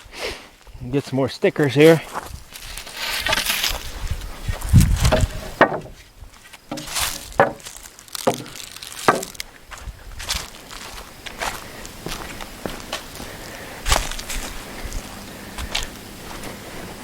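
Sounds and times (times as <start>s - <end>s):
low wooden thump: 4.9s - 6.0s, 6.7s - 9.4s
wooden boards clacking: 5.1s - 6.0s, 6.7s - 9.4s.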